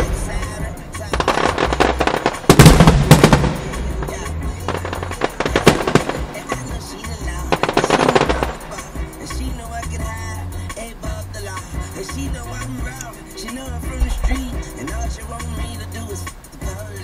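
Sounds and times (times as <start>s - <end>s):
fireworks bursting and crackling: 0.0s - 9.0s
hip-hop music with thumping bass: 0.0s - 17.0s.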